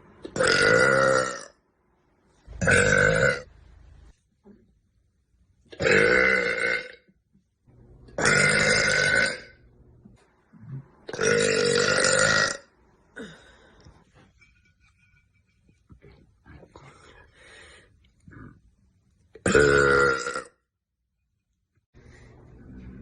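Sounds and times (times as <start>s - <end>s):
woman burping loudly: 0.2s - 1.6s, 2.6s - 3.5s, 5.7s - 7.1s, 8.2s - 9.6s, 11.1s - 13.4s, 19.4s - 20.6s.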